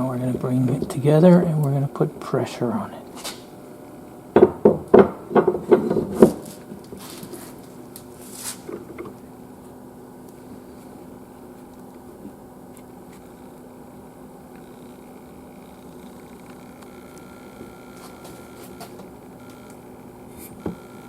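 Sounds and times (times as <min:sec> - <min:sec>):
faint steady hum: 0:00.0 - 0:21.0
softer knocks: 0:04.4 - 0:06.4.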